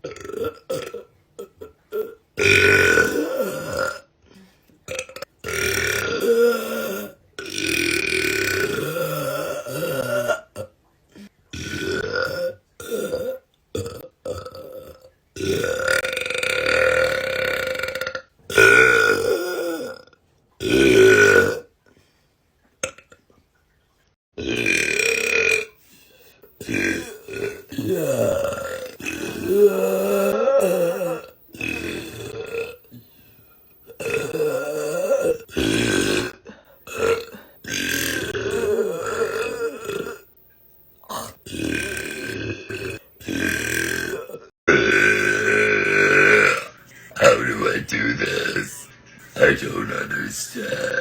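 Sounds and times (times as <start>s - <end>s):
woman belching: 0.0s - 4.0s, 4.9s - 10.7s, 11.6s - 21.7s, 24.4s - 25.8s, 26.6s - 33.0s, 33.8s - 40.3s, 41.0s - 47.5s, 49.8s - 51.0s.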